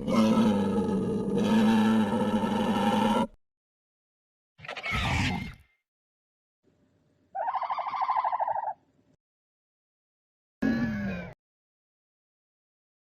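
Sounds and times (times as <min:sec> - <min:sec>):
creature roar: 0:00.0 - 0:03.4, 0:10.6 - 0:11.4
creature call: 0:07.4 - 0:08.8.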